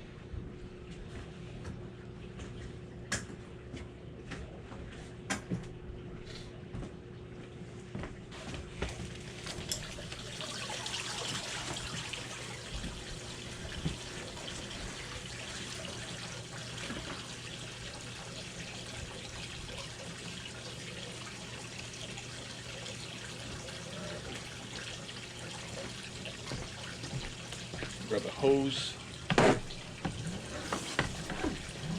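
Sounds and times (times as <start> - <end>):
hose water running into tub: 8.3 - 31.9.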